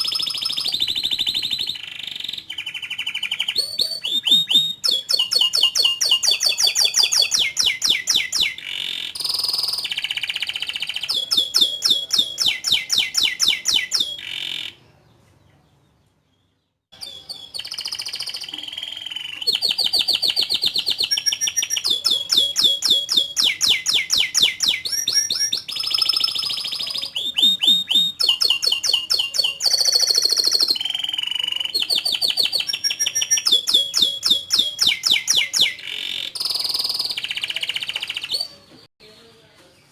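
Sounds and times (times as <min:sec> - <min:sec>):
canary singing trills: 0:00.0 - 0:39.3.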